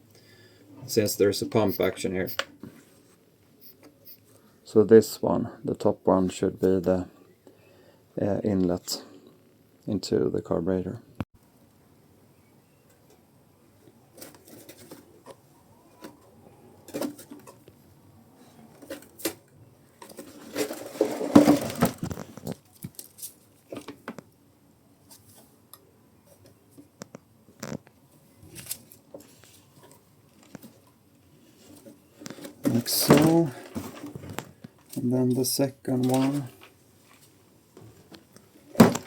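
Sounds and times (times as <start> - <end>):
scraping rustle: 14.1 - 17.6, 20.0 - 23.9.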